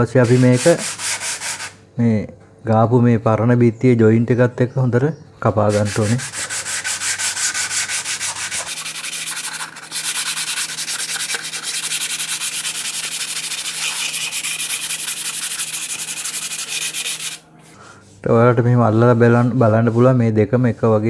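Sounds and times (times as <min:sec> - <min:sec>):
hand sanding wall putty: 0:00.0 - 0:01.8, 0:05.7 - 0:17.5.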